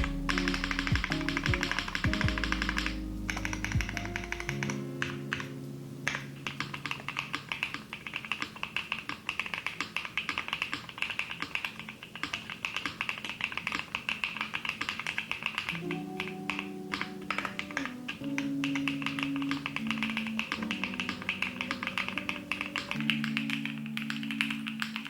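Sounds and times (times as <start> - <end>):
fast mechanical keyboard typing: 0.0 - 5.5, 6.1 - 25.0
soft background music: 0.0 - 8.7, 15.6 - 25.0.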